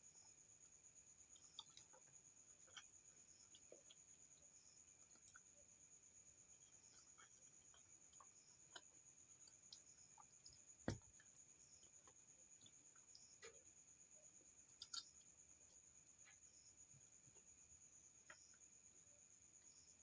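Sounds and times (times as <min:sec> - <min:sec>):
soft chewing: 0:00.0 - 0:20.0
dull thump: 0:10.8 - 0:11.2.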